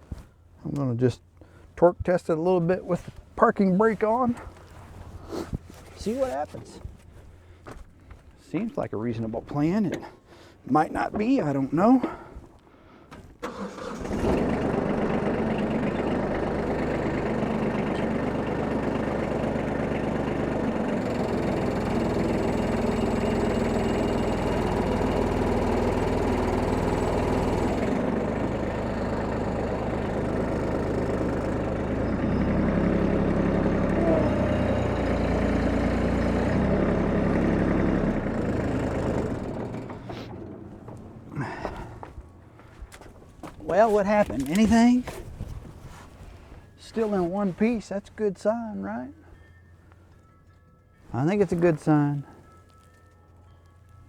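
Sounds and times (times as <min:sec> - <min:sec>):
tractor diesel engine revving: 0:13.4 - 0:42.6.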